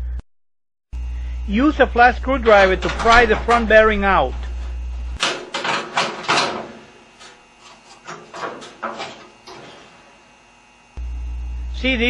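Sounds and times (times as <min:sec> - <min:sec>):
screwdriver scraping and clicking: 0:07.2 - 0:09.6.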